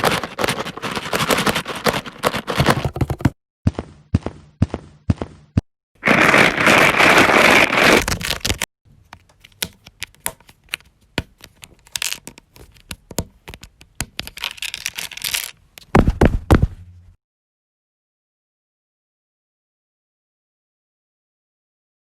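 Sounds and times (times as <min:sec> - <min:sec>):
lego bricks rasping rush: 0:00.0 - 0:03.4, 0:06.0 - 0:08.7
plastic clicks: 0:08.5 - 0:15.9.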